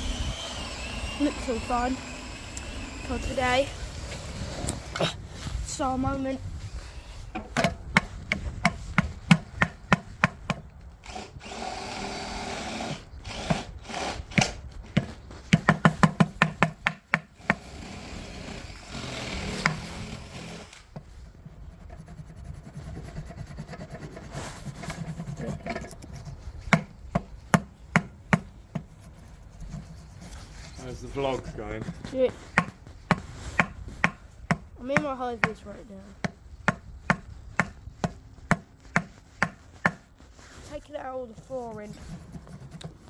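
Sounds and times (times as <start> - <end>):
rubbing and scraping: 0.0 - 11.7, 13.3 - 43.0
sharp knocks: 7.4 - 10.6, 14.4 - 17.6, 32.5 - 35.6.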